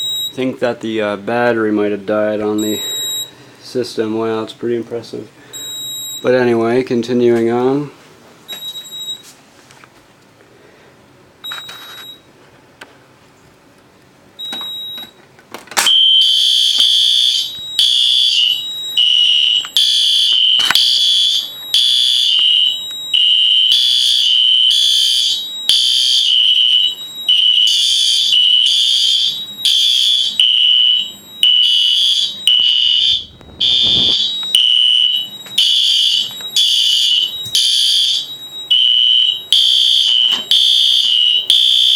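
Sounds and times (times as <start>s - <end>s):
fire alarm pulsing tone: 0.0s - 0.4s, 2.5s - 3.4s, 5.5s - 6.3s, 14.4s - 15.1s, 15.8s - 41.9s
faint high beeps: 32.4s - 35.5s.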